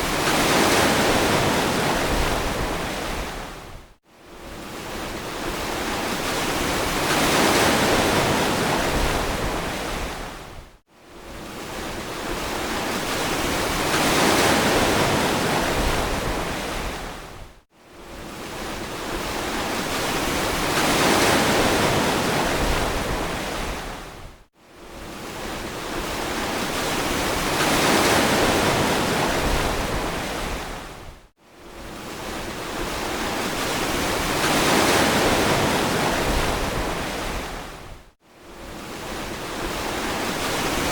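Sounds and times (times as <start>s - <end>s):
ocean waves washing in: 24.8s - 40.9s.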